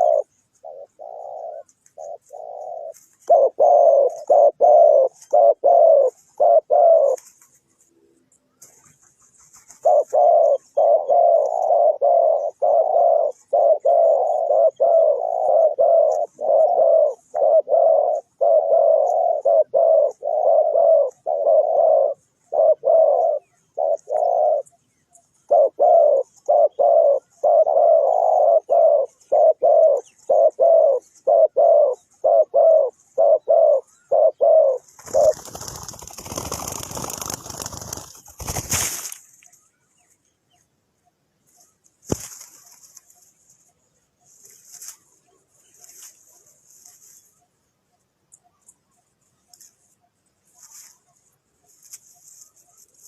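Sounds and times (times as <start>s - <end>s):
dove cooing: 0.0s - 7.4s, 9.6s - 38.5s
rustling: 1.4s - 10.6s, 34.8s - 39.6s, 41.4s - 47.4s, 49.4s - 53.0s.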